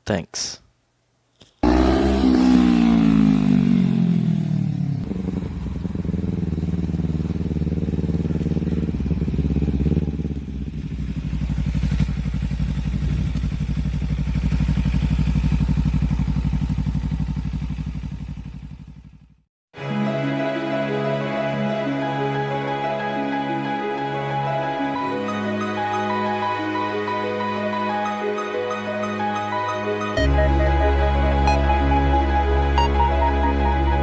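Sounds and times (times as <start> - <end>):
car engine idling: 5.0 - 19.2.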